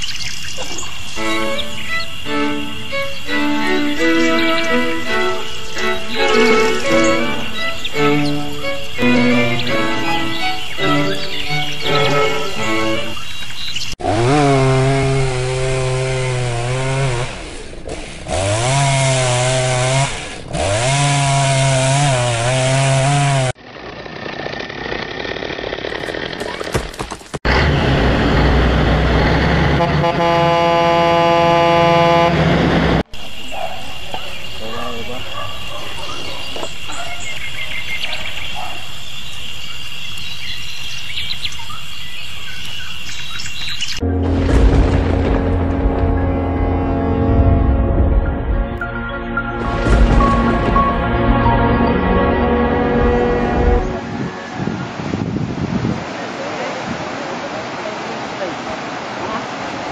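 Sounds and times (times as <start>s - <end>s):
bird chirps: 0.0s - 14.0s, 33.2s - 44.0s
chainsaw revving: 14.0s - 26.7s
low rumble: 44.0s - 48.9s.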